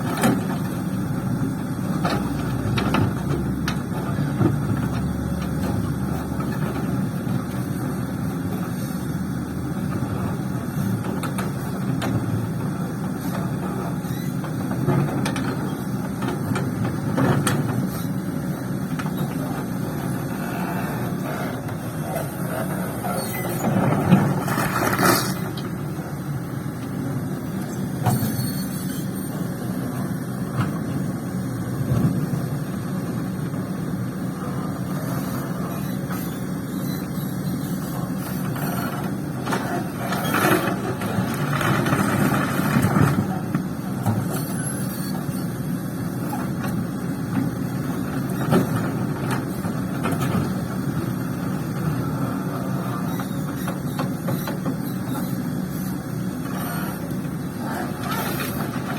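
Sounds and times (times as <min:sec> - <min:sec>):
excavator diesel engine running: 0:00.0 - 0:58.9.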